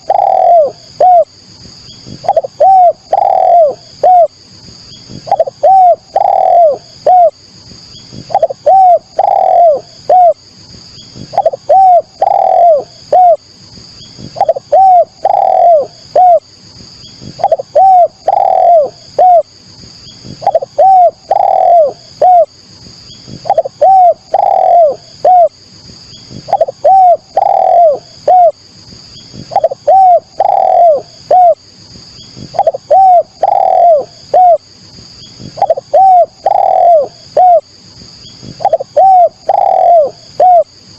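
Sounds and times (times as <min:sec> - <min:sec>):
dove cooing: 0:00.0 - 0:01.3, 0:02.0 - 0:04.4, 0:05.1 - 0:07.4, 0:08.2 - 0:10.4, 0:11.2 - 0:13.4, 0:14.2 - 0:16.5, 0:17.2 - 0:19.5, 0:20.2 - 0:22.6, 0:23.3 - 0:25.6, 0:26.3 - 0:28.6, 0:29.3 - 0:31.6, 0:32.4 - 0:34.6, 0:35.4 - 0:37.7, 0:38.4 - 0:40.7.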